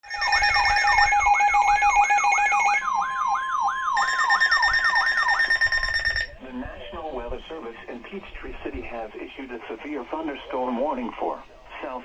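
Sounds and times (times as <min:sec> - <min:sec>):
steady electronic alert tones: 0:00.0 - 0:06.4
whooping siren sweep: 0:00.0 - 0:06.4.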